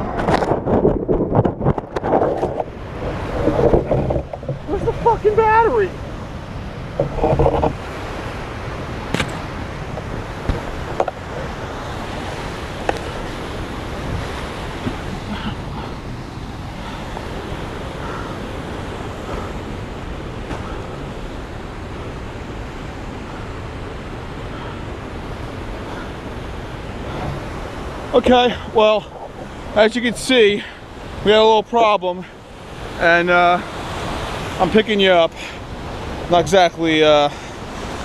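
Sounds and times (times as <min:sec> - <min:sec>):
waterfall rushing: 0:02.9 - 0:21.6
loud thump: 0:09.1 - 0:09.5
sharp knocks: 0:09.1 - 0:11.2.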